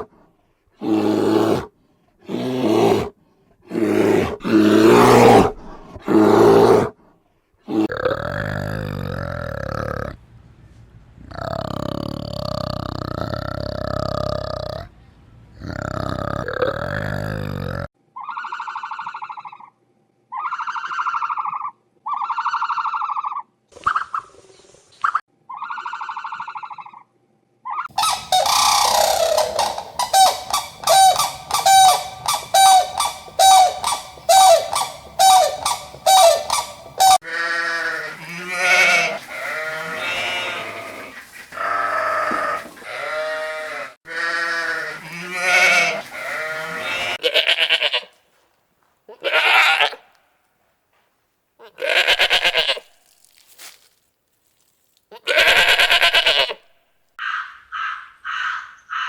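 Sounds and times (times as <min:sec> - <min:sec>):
animal calls: 0:25.5 - 0:27.0, 0:27.7 - 0:47.2.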